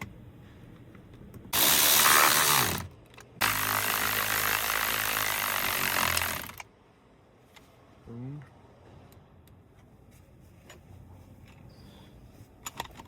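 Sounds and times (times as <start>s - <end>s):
handheld power driver running: 1.6s - 6.6s.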